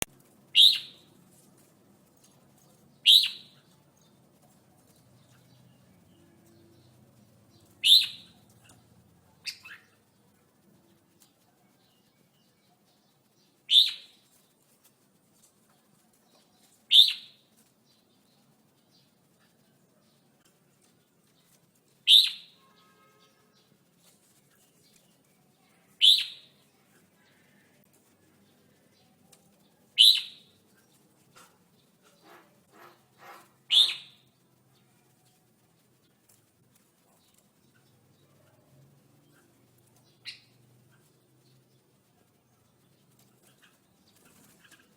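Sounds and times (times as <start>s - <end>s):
bird calling: 0.6s - 1.1s, 3.0s - 3.6s, 7.7s - 8.8s, 13.7s - 14.2s, 16.9s - 17.4s, 22.1s - 22.6s, 26.0s - 26.5s, 30.0s - 30.5s, 32.0s - 34.3s.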